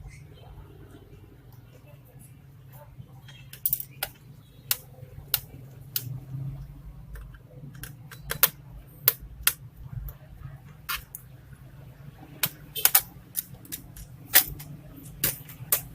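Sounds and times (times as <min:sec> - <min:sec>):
clicks of laptop plastic parts: 0:07.1 - 0:10.2, 0:12.4 - 0:15.9.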